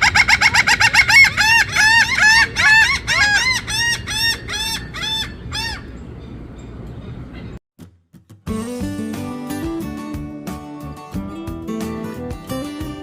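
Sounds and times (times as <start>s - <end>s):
gull laughing call: 0.0s - 5.9s.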